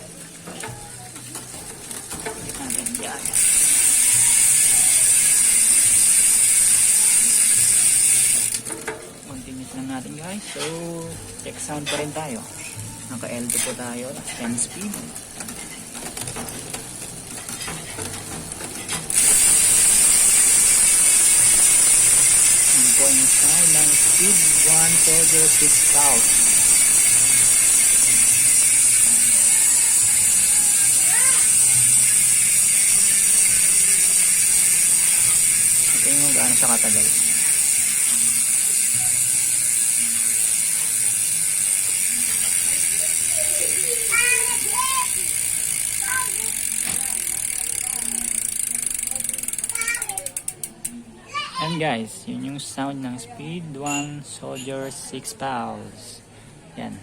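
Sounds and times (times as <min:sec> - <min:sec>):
bicycle hub ratchet clicks: 0:00.6 - 0:09.0, 0:13.3 - 0:51.0
high-pitched freewheel buzz: 0:01.8 - 0:08.7, 0:19.1 - 0:50.7.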